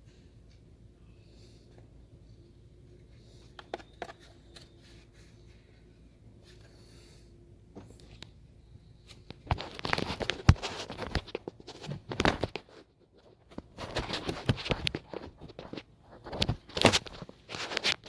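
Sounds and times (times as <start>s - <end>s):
small parts and tools handled: 3.0s - 5.8s, 9.0s - 18.0s.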